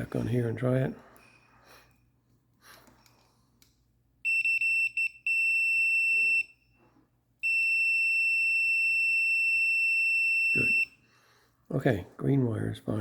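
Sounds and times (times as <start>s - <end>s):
continuity tester beeping: 4.2s - 6.6s, 7.4s - 11.0s.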